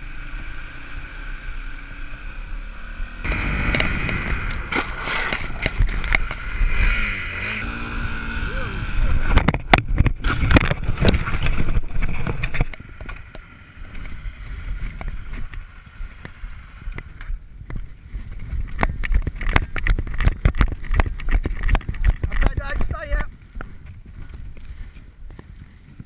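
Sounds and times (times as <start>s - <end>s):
motorcycle engine droning: 0.0s - 22.4s
bike jolting and rattling: 3.3s - 7.0s, 8.5s - 16.2s, 17.1s - 23.2s.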